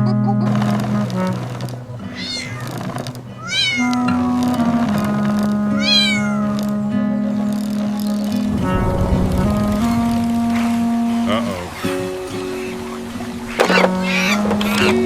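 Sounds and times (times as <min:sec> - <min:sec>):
background music: 0:00.0 - 0:15.0
high animal cries: 0:02.0 - 0:04.4, 0:05.7 - 0:06.6, 0:11.3 - 0:15.0.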